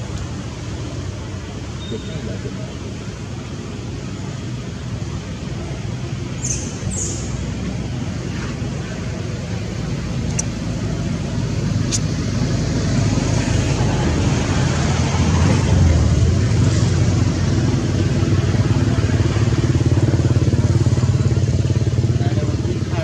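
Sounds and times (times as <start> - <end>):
small motorbike engine running: 15.7 - 23.0.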